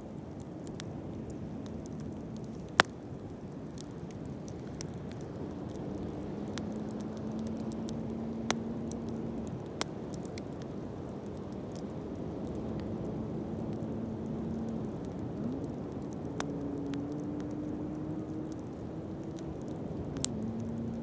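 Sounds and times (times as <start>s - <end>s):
bonfire burning: 0.0s - 21.0s
fire crackling: 0.0s - 21.0s
sharp fire pops: 0.3s - 3.0s.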